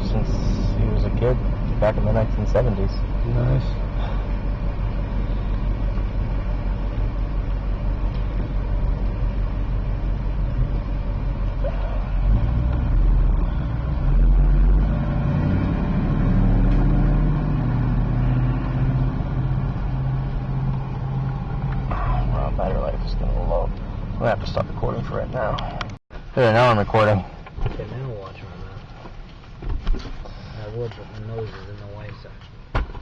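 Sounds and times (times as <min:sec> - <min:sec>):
car engine humming: 0:00.0 - 0:33.0.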